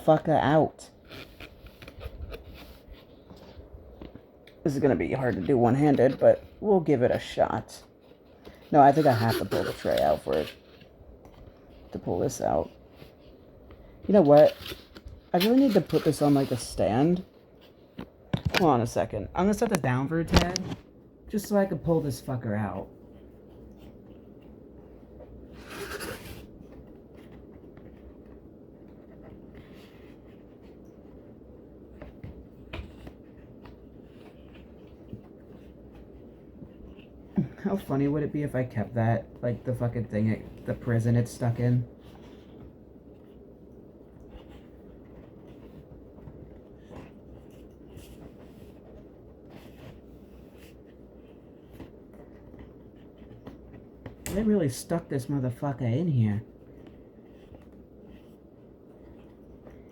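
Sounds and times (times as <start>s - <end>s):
cardboard and plastic rustling: 0.0s - 59.9s
faint low hum: 0.0s - 59.9s
packaging scraping and rustling: 25.2s - 28.1s.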